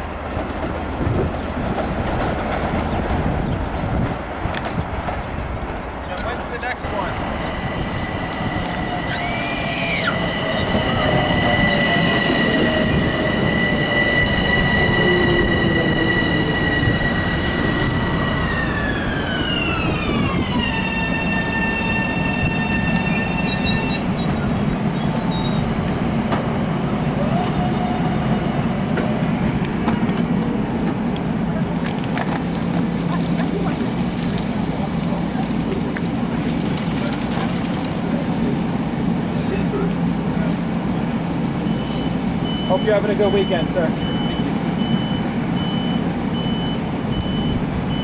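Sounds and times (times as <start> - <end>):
train rumbling past: 0.0 - 48.0.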